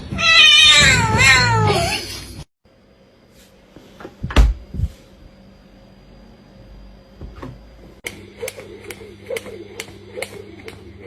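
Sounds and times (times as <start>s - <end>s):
cat meowing: 0.1s - 2.0s.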